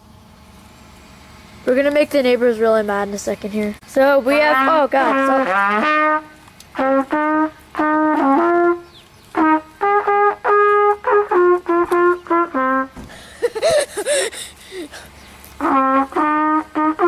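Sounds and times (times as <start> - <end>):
trumpet blasts: 4.4 - 13.0, 15.6 - 17.0.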